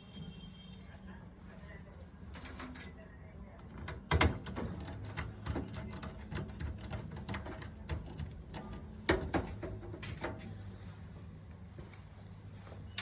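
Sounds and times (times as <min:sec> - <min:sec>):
screwdriver clicking on metal chassis: 0:04.0 - 0:10.3.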